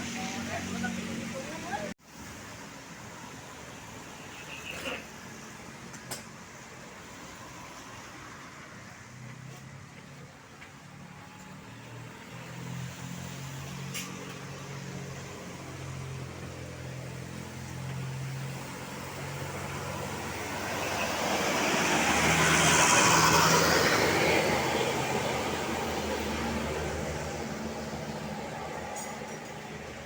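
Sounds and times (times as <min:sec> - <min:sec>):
vehicle passing close by: 0:11.8 - 0:29.2.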